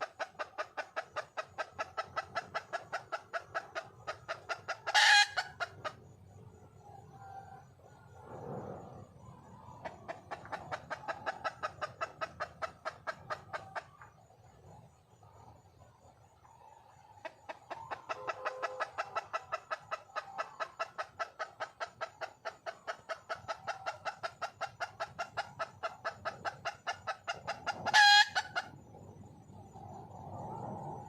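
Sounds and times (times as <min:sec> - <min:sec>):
hen clucking: 0:00.0 - 0:06.0, 0:09.3 - 0:14.2, 0:16.4 - 0:28.8.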